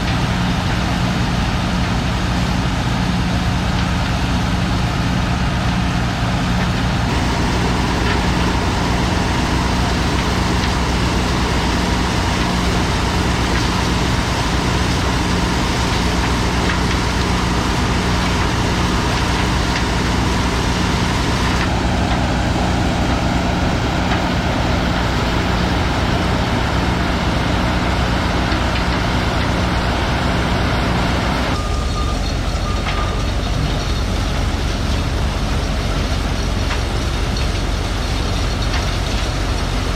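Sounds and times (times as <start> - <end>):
corn sheller running: 0.0 - 31.8
engine drone: 0.0 - 39.9.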